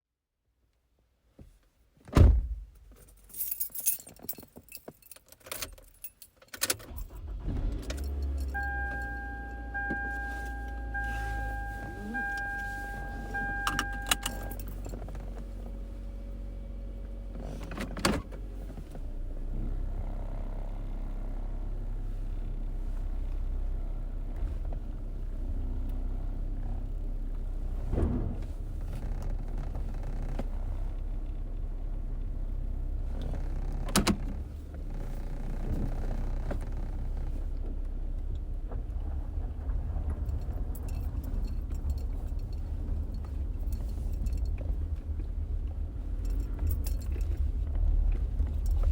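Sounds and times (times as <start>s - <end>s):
loud thump: 2.1s - 2.7s, 27.9s - 28.8s
keys jangling: 2.9s - 7.0s, 12.1s - 15.2s, 46.2s - 47.5s
car engine running: 6.9s - 48.9s
dashboard warning chime beeping: 8.0s - 15.0s.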